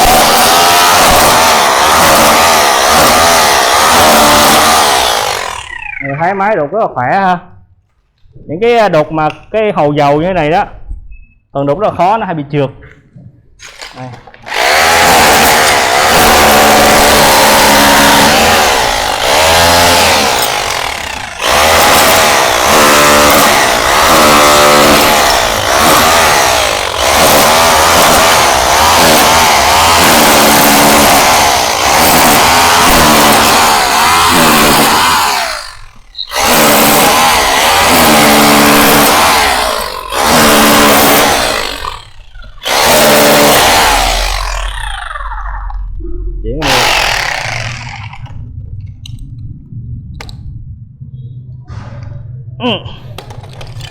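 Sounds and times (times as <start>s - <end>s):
rotary hammer chiselling tile: 0.0s - 6.0s, 13.6s - 44.9s, 46.6s - 48.2s.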